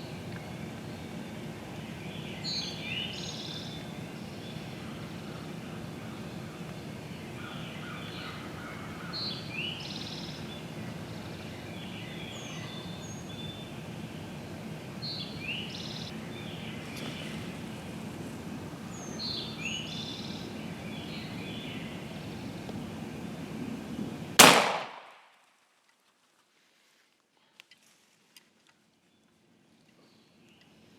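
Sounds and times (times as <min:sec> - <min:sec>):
songbirds singing: 0:00.0 - 0:18.0, 0:18.7 - 0:23.5
background hiss: 0:00.0 - 0:30.9
shotgun shot: 0:24.4 - 0:25.2.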